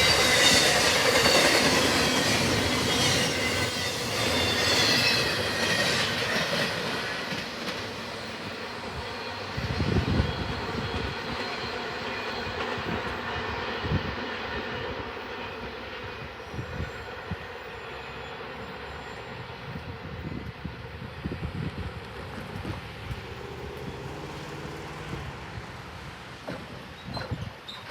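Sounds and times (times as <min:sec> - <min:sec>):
train wheel squeal: 0:00.0 - 0:25.3, 0:26.4 - 0:27.9
freight train rumbling past: 0:00.0 - 0:27.9
wind gusts on microphone: 0:08.9 - 0:11.5, 0:12.4 - 0:14.9, 0:16.0 - 0:17.5, 0:19.4 - 0:27.7.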